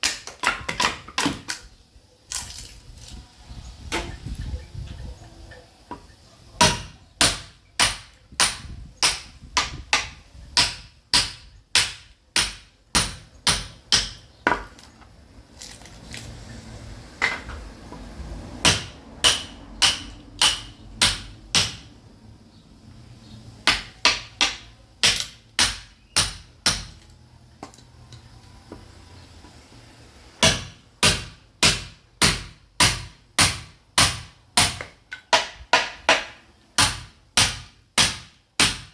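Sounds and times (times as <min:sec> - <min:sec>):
sledgehammer striking a chisel: 0:06.6 - 0:14.9, 0:18.6 - 0:21.9, 0:23.6 - 0:27.7, 0:30.4 - 0:38.9.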